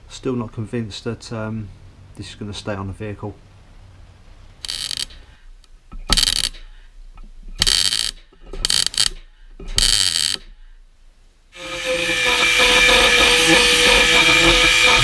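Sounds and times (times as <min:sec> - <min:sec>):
grinding noise with steady tone: 0:04.1 - 0:06.7, 0:07.4 - 0:10.6, 0:11.6 - 0:15.0
welding crackling bursts: 0:04.6 - 0:05.4, 0:06.1 - 0:06.6, 0:07.6 - 0:09.2, 0:09.8 - 0:10.5, 0:11.6 - 0:15.0.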